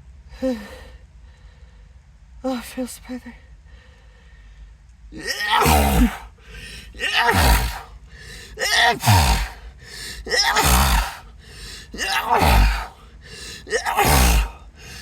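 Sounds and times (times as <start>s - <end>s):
person sneezing: 5.2s - 15.0s.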